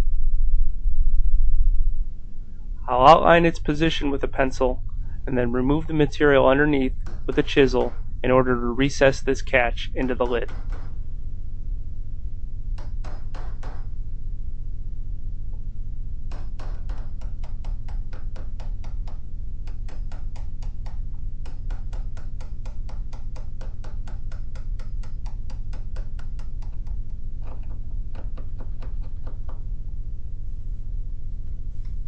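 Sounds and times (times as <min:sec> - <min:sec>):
steady low hum: 0:00.0 - 0:32.0
chisel tapping into wood: 0:16.3 - 0:29.6.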